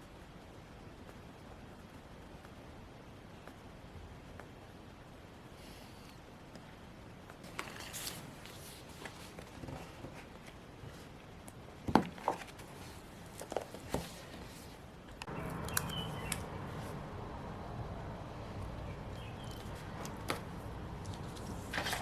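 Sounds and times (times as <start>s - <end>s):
paper and stickers rustling: 7.4s - 11.2s, 12.0s - 17.0s, 18.6s - 22.0s.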